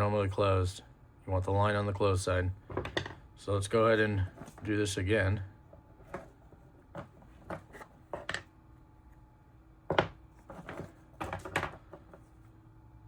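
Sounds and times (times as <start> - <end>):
tools set down on workbench: 2.7 - 3.2, 7.0 - 8.5, 9.9 - 12.2.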